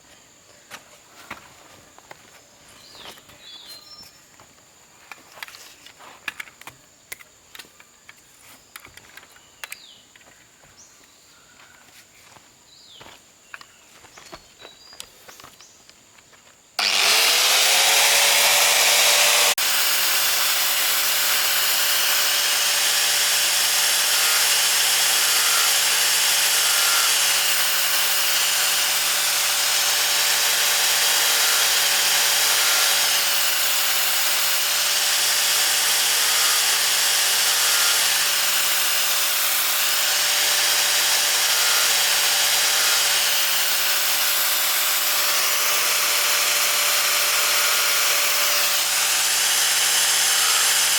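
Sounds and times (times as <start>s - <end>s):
powered saw motor whine: 16.8s - 50.9s.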